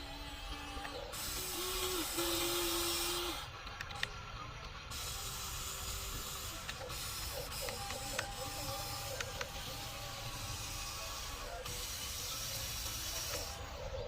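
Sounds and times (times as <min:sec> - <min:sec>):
toy electric motors whirring: 0:00.0 - 0:14.0
sharp clicks: 0:03.6 - 0:04.8.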